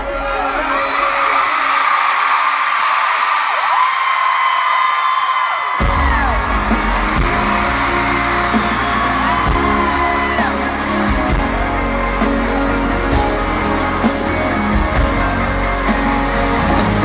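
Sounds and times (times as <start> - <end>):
crowd screaming: 0.0 - 17.0
live pop band playing: 5.8 - 17.0
person singing: 5.8 - 17.0.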